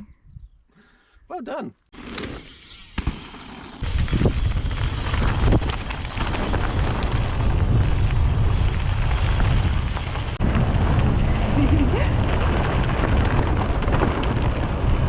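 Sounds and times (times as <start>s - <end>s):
wind buffeting microphone: 3.8s - 15.0s.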